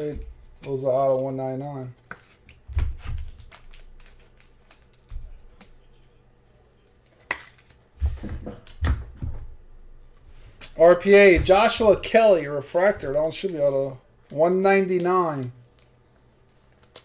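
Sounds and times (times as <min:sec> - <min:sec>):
cards clicking and snapping: 0:00.6 - 0:06.2, 0:14.2 - 0:17.0
dull thumps: 0:08.0 - 0:09.7, 0:11.0 - 0:12.2.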